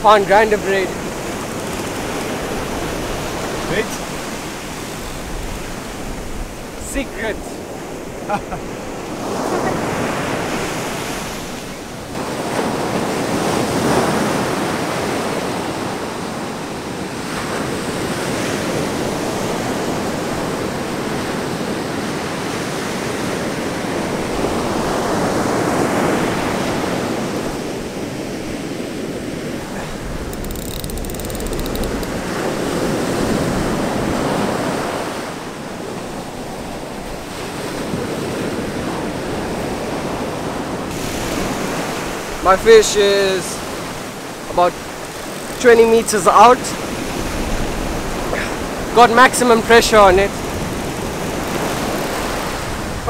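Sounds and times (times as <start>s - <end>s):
wind on microphone: 26.5s - 49.0s, 49.6s - 53.0s
surf breaking on beach: 31.0s - 53.0s.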